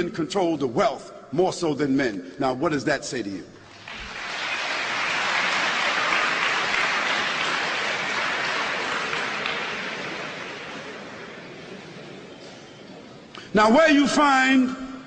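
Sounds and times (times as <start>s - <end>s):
audience applauding: 3.7s - 12.4s.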